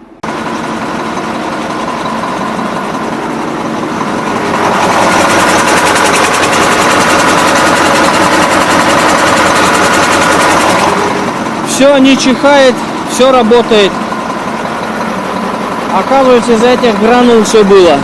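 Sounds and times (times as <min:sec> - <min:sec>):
diesel truck engine running: 0:00.0 - 0:18.0.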